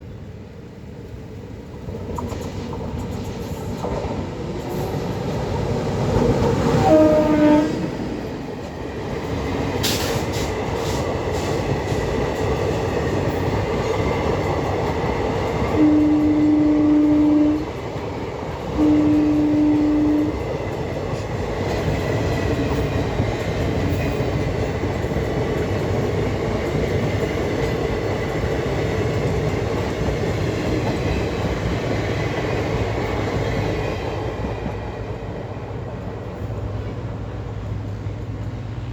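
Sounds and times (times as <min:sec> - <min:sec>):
train wheels rumbling on track: 0:00.0 - 0:38.9
train horn blasts: 0:06.8 - 0:08.0, 0:15.7 - 0:17.7, 0:18.7 - 0:20.5.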